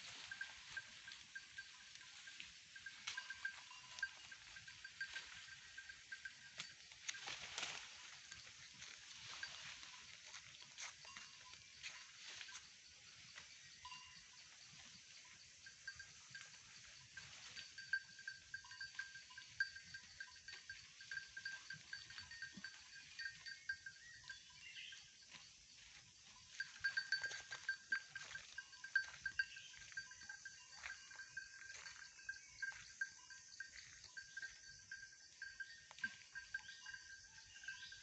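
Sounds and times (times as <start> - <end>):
rustles and snaps in undergrowth: 7.0 - 7.9.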